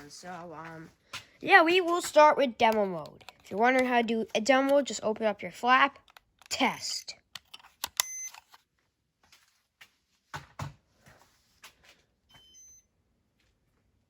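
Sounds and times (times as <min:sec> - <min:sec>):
short electronic beeps: 0:08.0 - 0:08.4.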